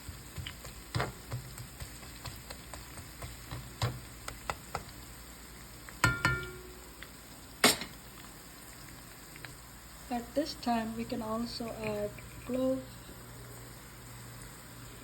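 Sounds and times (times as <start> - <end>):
utensil knocking and scraping wok: 0.0 - 5.0
food sizzling in a wok: 0.0 - 15.0.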